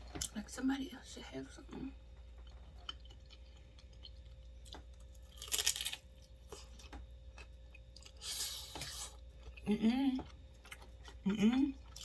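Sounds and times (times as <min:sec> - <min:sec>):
crisp chip crunching: 0:02.8 - 0:09.7.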